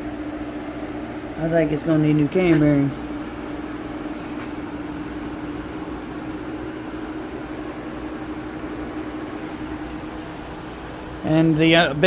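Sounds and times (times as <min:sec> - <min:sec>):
constant hiss: 0:00.0 - 0:12.0
machine hum: 0:00.0 - 0:12.0.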